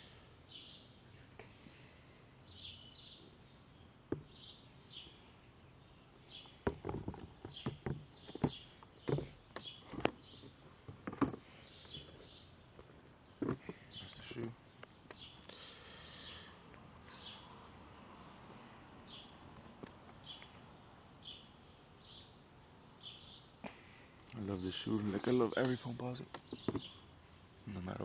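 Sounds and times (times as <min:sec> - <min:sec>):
small birds chirping: 0:00.0 - 0:28.0
irregular knocks and thumps: 0:04.1 - 0:04.4, 0:06.5 - 0:13.9, 0:26.3 - 0:27.0.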